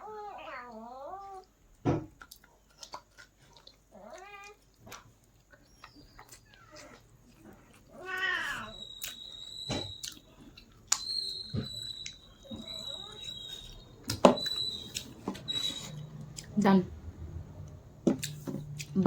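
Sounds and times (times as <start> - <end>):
chewing and mouth clicks: 2.1 - 8.1, 8.7 - 16.6, 17.6 - 19.0
short wavering pitched cries: 11.0 - 16.1.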